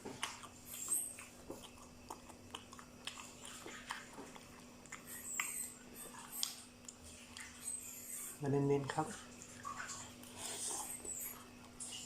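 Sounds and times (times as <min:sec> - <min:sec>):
person chewing food: 0:00.0 - 0:08.4
faint electrical hum: 0:00.0 - 0:12.0.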